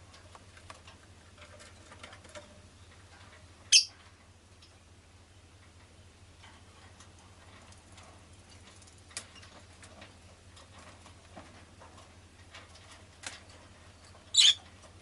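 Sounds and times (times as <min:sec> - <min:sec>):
faint clicks and scratching: 0:00.0 - 0:04.9, 0:05.6 - 0:15.0
bird chirping shrilly: 0:03.7 - 0:03.9.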